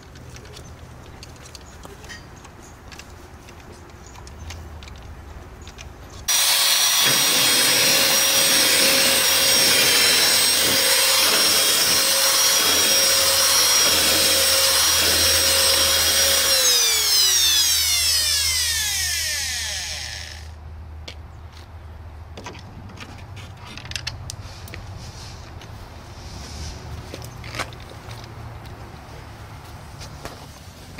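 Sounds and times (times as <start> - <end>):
faint clicks and handling noises: 0.0 - 6.3
power drill whining: 6.3 - 20.6.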